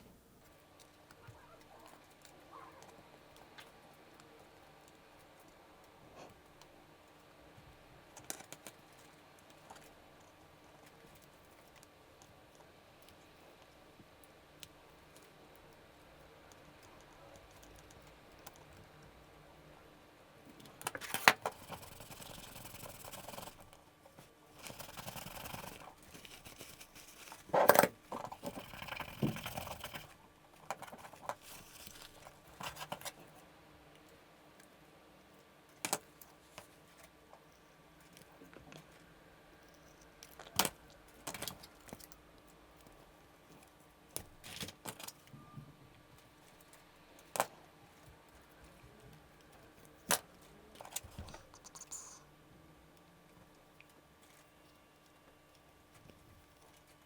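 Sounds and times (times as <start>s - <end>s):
rustling: 24.1s - 27.6s.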